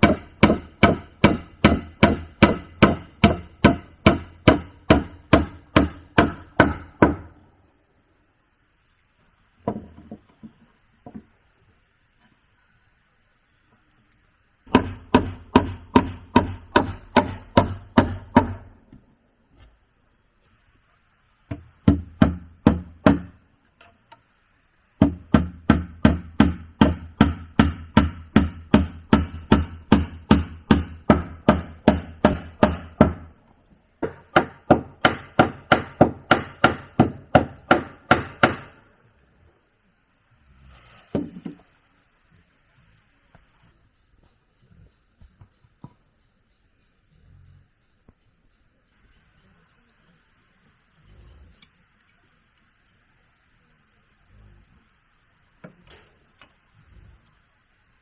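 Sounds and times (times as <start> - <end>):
hand tool striking wood: 0.0 - 7.3, 14.7 - 18.7, 21.5 - 23.4, 25.0 - 33.3, 34.0 - 38.8.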